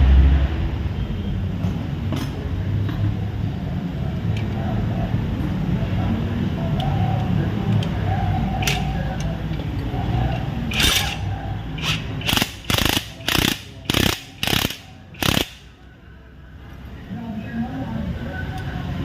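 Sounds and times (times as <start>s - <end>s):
rasping mechanical tool strokes: 10.7s - 15.6s.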